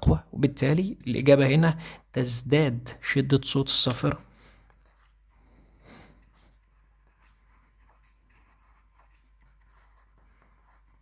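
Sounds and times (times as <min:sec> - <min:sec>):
pen scratching on paper: 0:04.7 - 0:05.4, 0:06.1 - 0:11.0.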